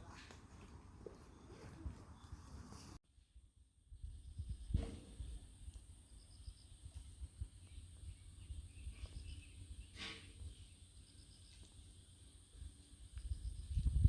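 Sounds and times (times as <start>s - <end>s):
insect chirps: 5.9s - 9.4s.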